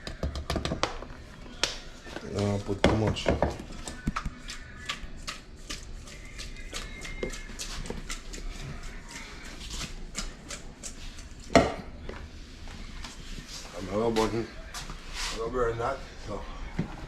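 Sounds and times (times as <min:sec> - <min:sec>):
kitchen clicks and taps: 0:00.0 - 0:01.0.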